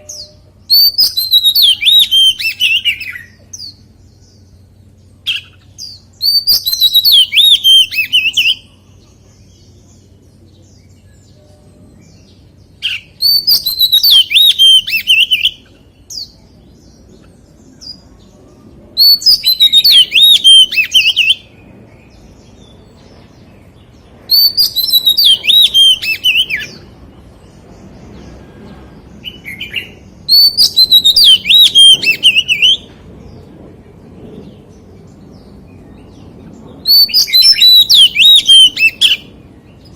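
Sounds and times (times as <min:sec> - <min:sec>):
bird singing: 0:00.0 - 0:39.9.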